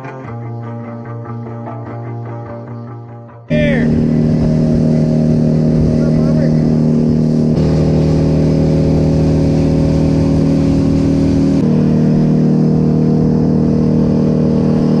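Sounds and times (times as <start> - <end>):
boat motor running: 3.5 - 15.0.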